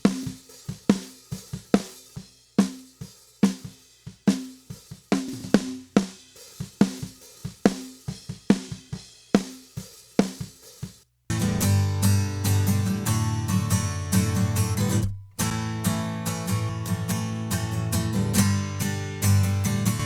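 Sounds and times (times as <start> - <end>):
snare drum: 0.0 - 11.0
hi-hat and cymbals: 0.0 - 20.0.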